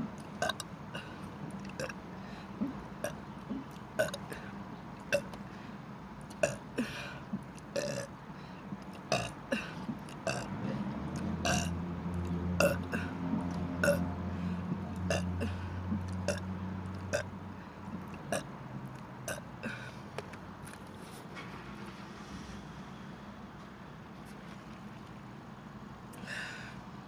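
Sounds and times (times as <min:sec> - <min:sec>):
person burping: 0:00.4 - 0:02.0, 0:02.6 - 0:04.4, 0:06.4 - 0:07.1, 0:07.8 - 0:08.1, 0:09.1 - 0:10.5, 0:11.4 - 0:11.7, 0:12.6 - 0:13.1, 0:13.8 - 0:14.1, 0:15.1 - 0:16.4, 0:17.1 - 0:17.3, 0:19.3 - 0:19.9.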